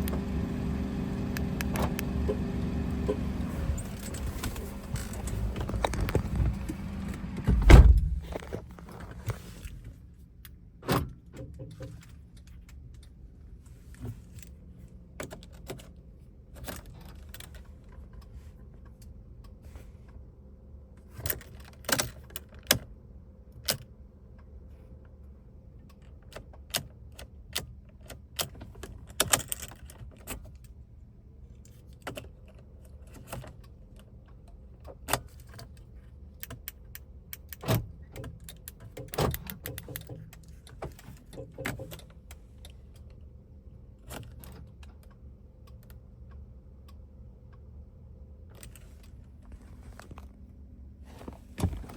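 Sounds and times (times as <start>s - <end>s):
steady low hum: 0.0s - 10.2s, 45.1s - 51.9s
sharp clicks and knocks: 3.0s - 9.0s
car keys jangling: 3.4s - 7.2s.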